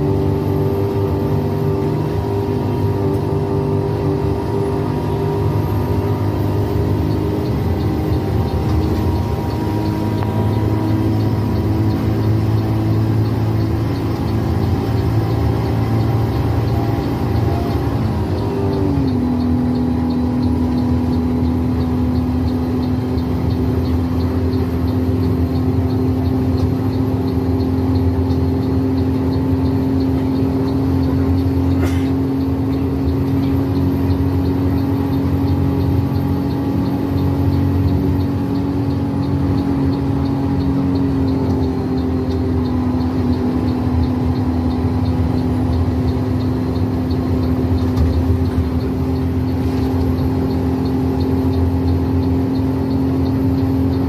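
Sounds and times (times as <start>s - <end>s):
bus engine running: 0.0s - 54.0s
turn-signal indicator ticking: 0.0s - 54.0s.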